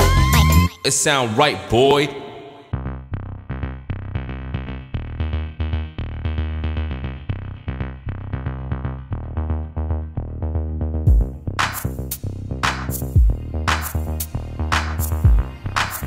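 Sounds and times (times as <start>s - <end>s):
heavy bass: 0.0s - 0.7s, 1.5s - 16.0s
deep kick drum: 11.1s - 13.6s, 15.2s - 15.5s.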